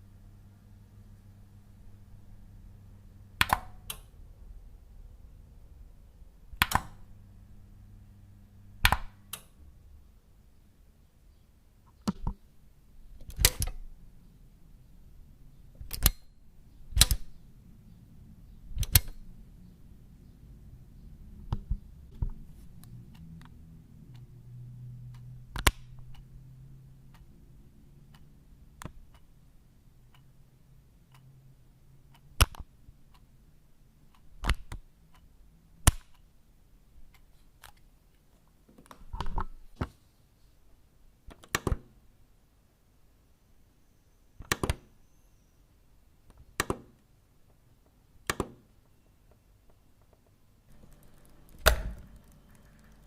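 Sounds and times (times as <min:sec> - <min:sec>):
switches clicking: 0:03.4 - 0:04.1, 0:06.6 - 0:07.0, 0:08.8 - 0:09.6, 0:15.8 - 0:16.3, 0:16.9 - 0:17.4, 0:18.8 - 0:19.2, 0:46.3 - 0:46.9, 0:48.2 - 0:48.6, 0:50.7 - 0:53.0.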